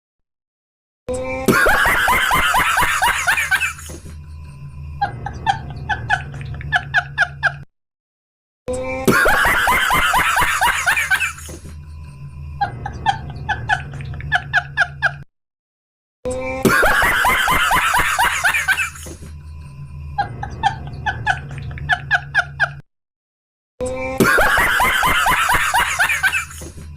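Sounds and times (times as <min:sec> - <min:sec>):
laughter-like sound clip: 0:01.2 - 0:04.2, 0:05.0 - 0:07.7, 0:08.8 - 0:11.8, 0:12.6 - 0:15.3, 0:16.4 - 0:19.4, 0:20.2 - 0:22.8, 0:23.9 - 0:26.9.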